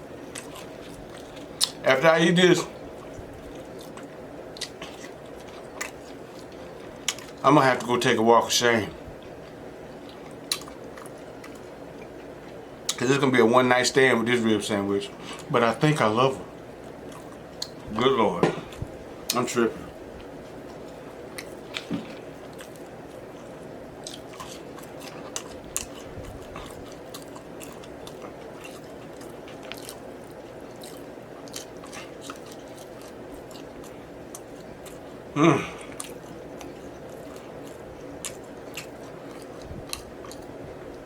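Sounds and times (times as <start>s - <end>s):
low background hum: 0.0s - 41.0s
wet chewing and lip smacking: 0.2s - 1.8s, 2.9s - 7.4s, 9.2s - 13.0s, 20.2s - 35.2s, 35.8s - 41.0s.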